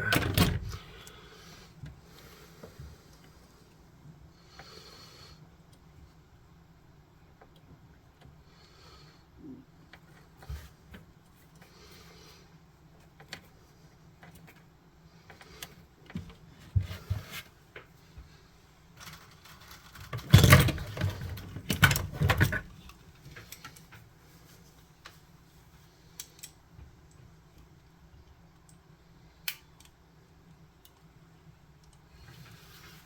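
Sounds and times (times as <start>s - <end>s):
clicks and rattles of hand work: 19.0s - 24.1s.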